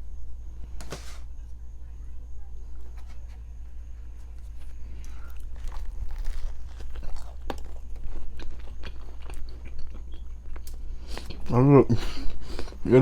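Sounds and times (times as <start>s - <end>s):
chewing crunchy food: 4.2s - 12.9s.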